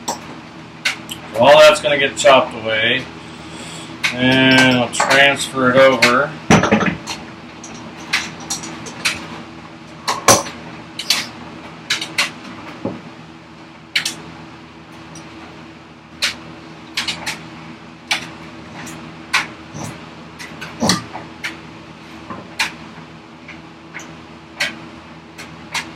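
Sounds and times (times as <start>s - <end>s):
steady low hum: 0.0s - 25.9s
tools knocking on workbench: 6.5s - 7.1s.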